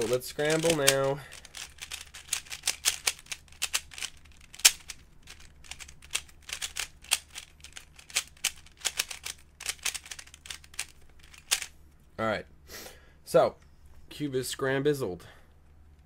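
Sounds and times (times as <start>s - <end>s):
rubik's cube plastic clicks: 0.0s - 11.7s.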